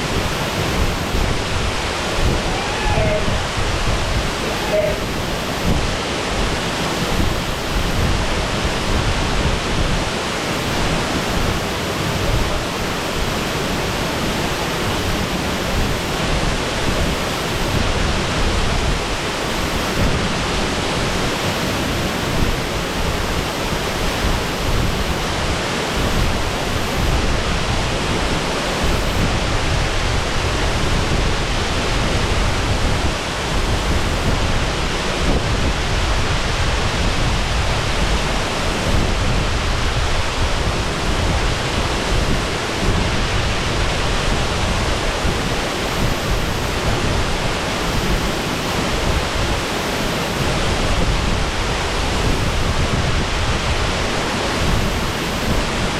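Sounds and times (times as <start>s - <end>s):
waterfall rushing: 0.0s - 55.9s.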